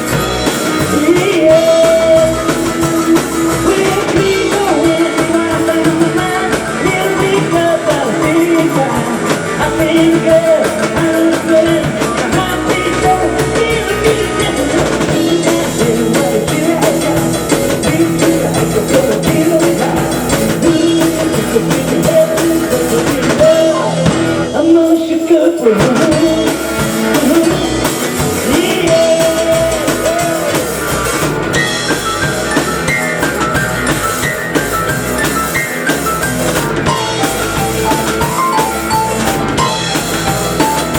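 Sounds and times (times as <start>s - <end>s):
person singing: 0.0s - 31.0s
drum kit: 0.0s - 40.9s
electric guitar: 0.0s - 40.9s.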